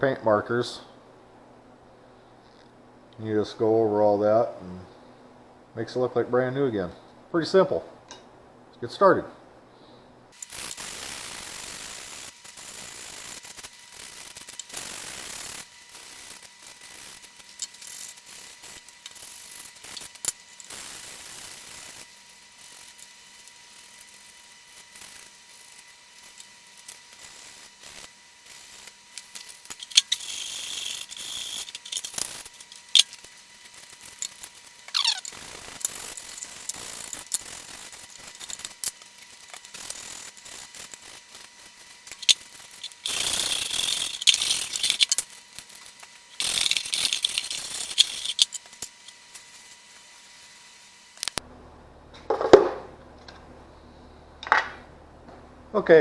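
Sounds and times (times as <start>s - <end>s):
plastic rasping and scraping: 12.4s - 49.8s
short falling squeak: 34.9s - 35.4s.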